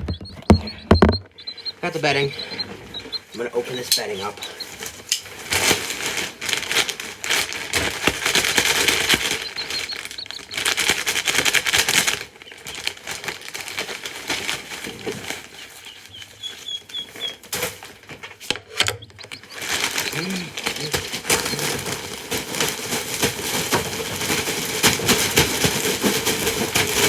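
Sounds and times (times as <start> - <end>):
baby chicks peeping: 0.0 - 27.0
bag crackling and rustling: 2.8 - 18.1, 19.5 - 27.0.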